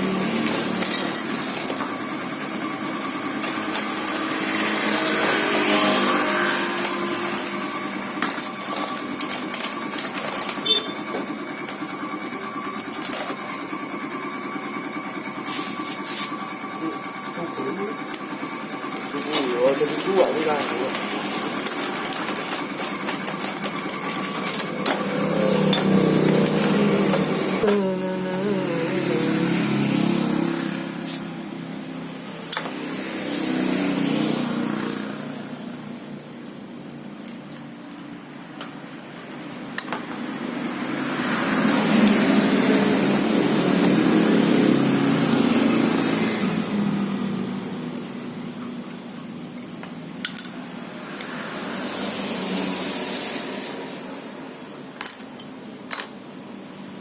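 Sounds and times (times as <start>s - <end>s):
machine humming: 0.0s - 32.6s
car engine with compressor clatter: 0.0s - 38.0s, 38.6s - 56.3s.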